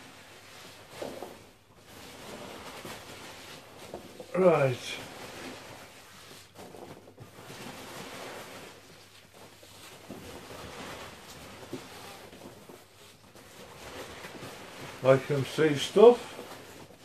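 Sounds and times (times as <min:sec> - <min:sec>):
rustling of packing peanuts: 0:00.0 - 0:17.0.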